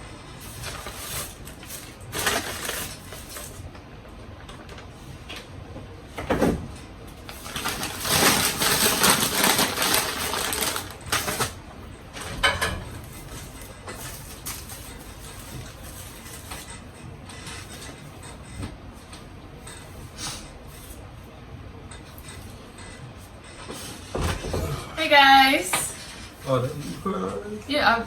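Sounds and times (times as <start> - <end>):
paper packaging crinkling: 0.4 - 3.7, 7.2 - 11.6.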